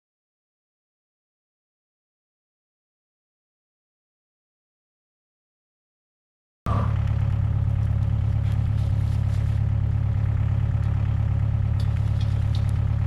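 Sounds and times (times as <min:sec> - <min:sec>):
diesel engine idling: 0:06.7 - 0:13.0.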